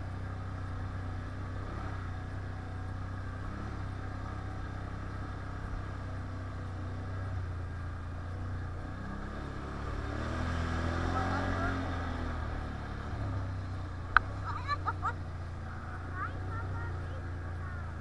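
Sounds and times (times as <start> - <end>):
quad engine running: 0.0 - 18.0.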